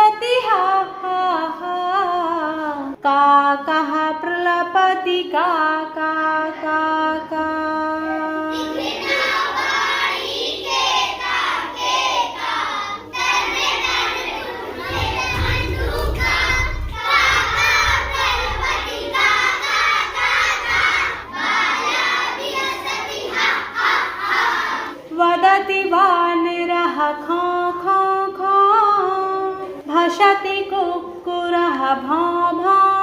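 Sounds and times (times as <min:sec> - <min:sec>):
children chanting loudly: 0:08.5 - 0:25.0
low rumble: 0:13.6 - 0:21.2.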